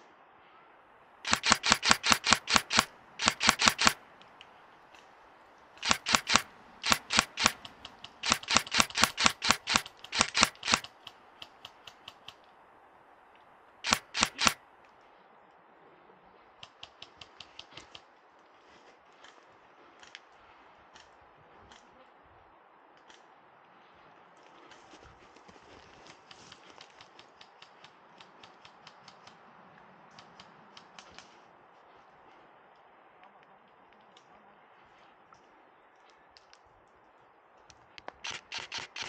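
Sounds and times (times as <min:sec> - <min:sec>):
airsoft guns firing bursts: 0:01.3 - 0:04.0, 0:05.8 - 0:11.0, 0:13.8 - 0:14.6.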